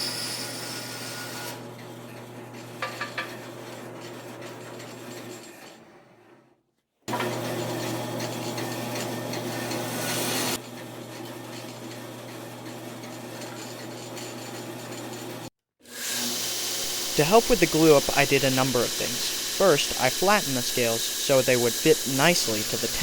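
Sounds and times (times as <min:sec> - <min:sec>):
wood being sanded on an abrasive: 0:09.6 - 0:10.6, 0:16.0 - 0:23.0.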